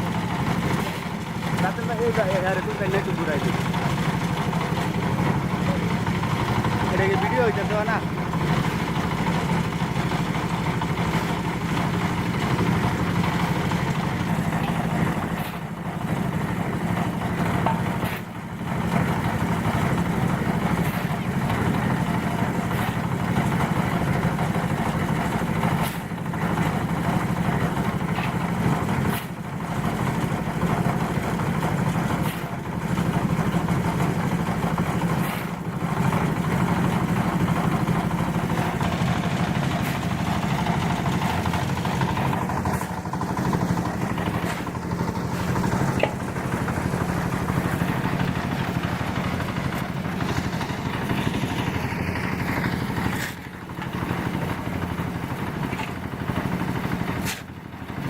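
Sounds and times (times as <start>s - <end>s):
engine running: 0.0s - 58.0s.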